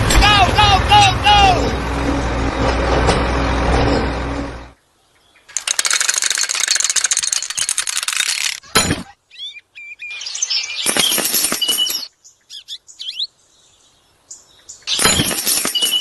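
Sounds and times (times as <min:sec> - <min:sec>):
vehicle engine humming: 0:00.0 - 0:08.6
birds chirping: 0:04.6 - 0:05.6, 0:08.6 - 0:16.0
rapid clattering of small pieces: 0:05.5 - 0:08.6.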